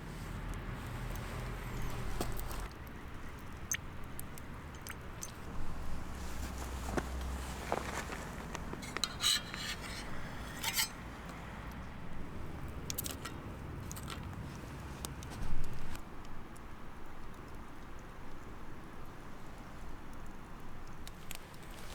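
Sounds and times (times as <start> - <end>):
metal utensils scraping plate: 7.5 - 11.1.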